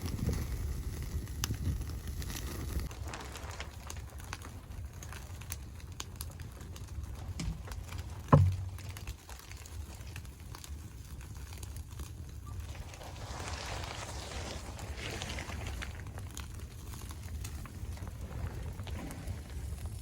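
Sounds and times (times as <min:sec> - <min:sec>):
light crackles and ticks: 0:00.0 - 0:20.0
dull thump: 0:07.4 - 0:08.8.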